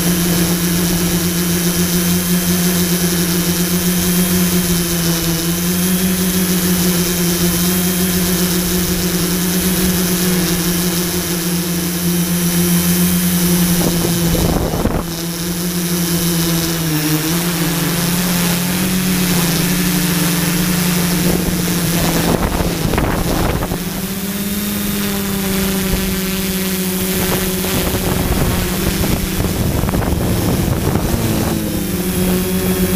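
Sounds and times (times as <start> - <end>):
drone propellers whining: 0.0 - 32.9
wind gusts on microphone: 13.6 - 15.2, 18.7 - 32.9.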